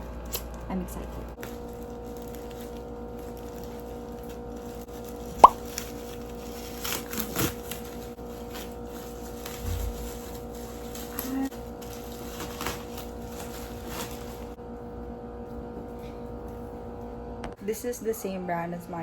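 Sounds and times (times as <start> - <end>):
packaging rustling: 1.4 - 14.6.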